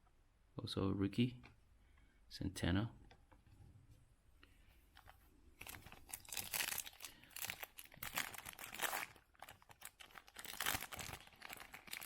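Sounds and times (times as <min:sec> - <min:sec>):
foil wrapper crinkling and tearing: 0:05.6 - 0:12.0.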